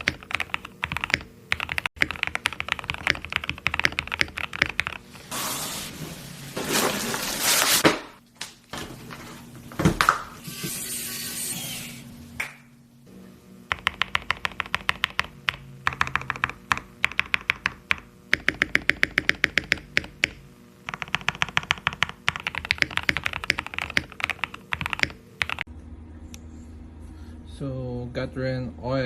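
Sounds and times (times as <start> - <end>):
mechanical keyboard typing: 0.0 - 5.0, 13.7 - 25.7.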